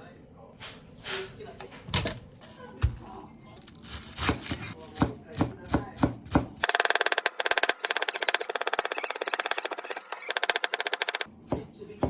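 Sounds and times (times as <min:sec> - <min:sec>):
knife chopping on cutting board: 0:04.2 - 0:06.6, 0:11.4 - 0:12.0.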